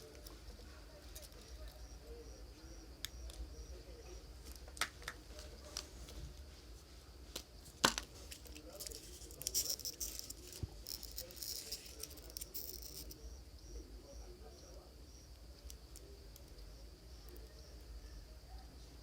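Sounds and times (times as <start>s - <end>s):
small parts clicking and tapping: 0.0s - 1.9s, 3.0s - 3.5s, 7.4s - 13.2s, 14.6s - 17.7s
plastic film crinkling: 7.7s - 13.1s.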